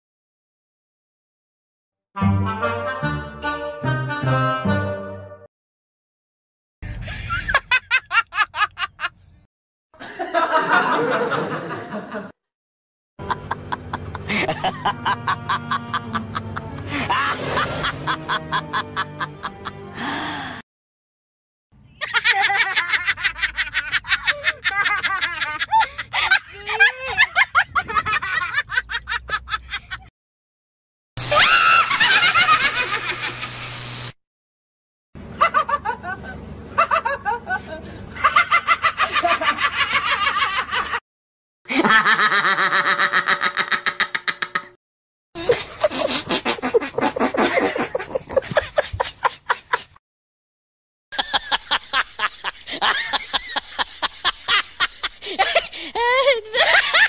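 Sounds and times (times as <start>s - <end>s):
high-pitched laugh: 7.0s - 9.1s, 22.0s - 30.1s, 31.2s - 33.6s, 41.7s - 44.8s, 45.4s - 50.0s, 51.2s - 57.0s
rhythmic bursts of laughter: 13.3s - 17.0s, 45.4s - 50.0s, 51.2s - 57.0s.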